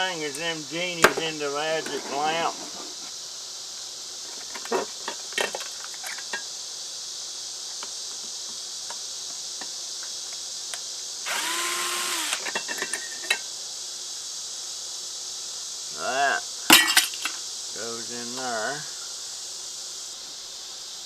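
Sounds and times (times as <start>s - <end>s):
screw gun motor whine: 11.3s - 12.6s.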